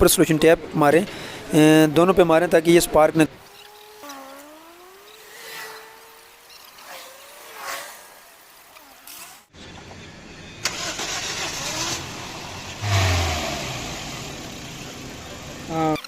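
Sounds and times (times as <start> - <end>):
car engine starting and revving: 10.6 - 15.8.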